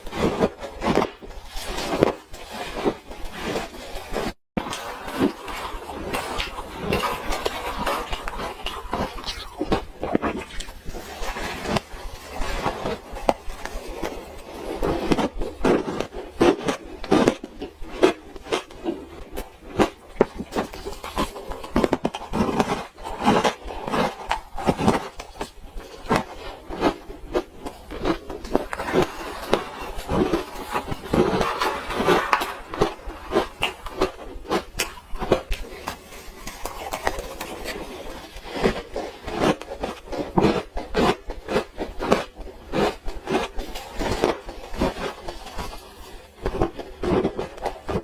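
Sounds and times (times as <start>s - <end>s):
chewing and crunching ice: 0.0s - 48.0s.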